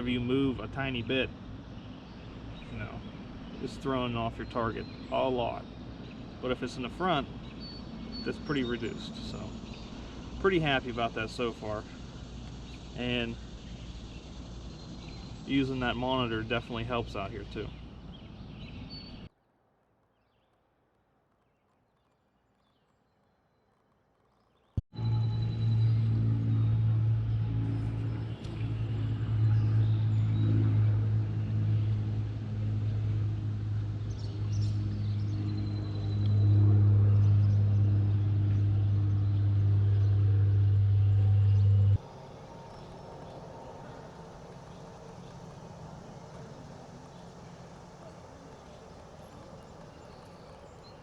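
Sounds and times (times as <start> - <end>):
distant bird chirps: 0.0 - 19.3, 24.3 - 51.0
faint outdoor background noise: 0.0 - 51.0
electric trolling motor humming: 25.0 - 51.0.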